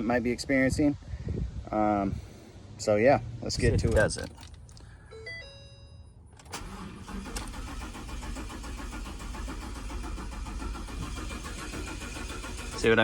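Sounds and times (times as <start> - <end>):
engine cranking without starting: 6.4 - 13.0.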